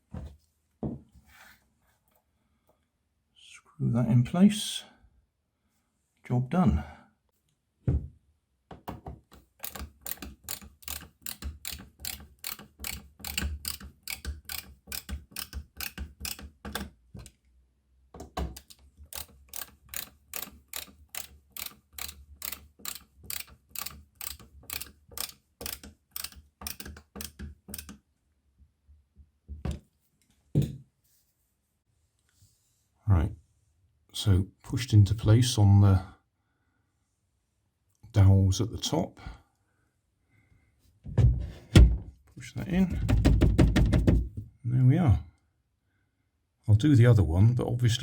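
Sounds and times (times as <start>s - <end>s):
ratchet screwdriver clicking: 9.6s - 16.8s, 18.6s - 27.9s.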